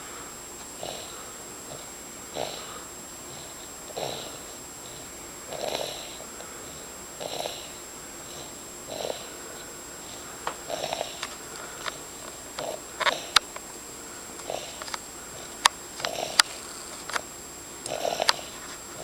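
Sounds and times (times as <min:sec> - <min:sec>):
person snoring: 0:00.0 - 0:13.4, 0:14.2 - 0:17.0, 0:17.8 - 0:19.0.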